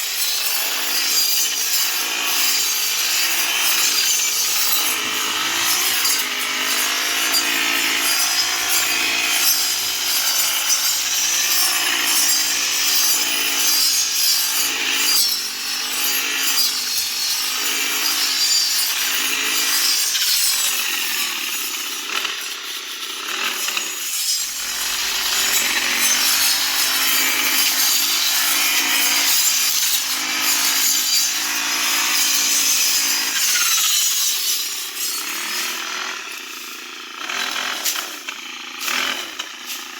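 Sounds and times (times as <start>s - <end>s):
grass cutting machine running: 0.0s - 39.9s.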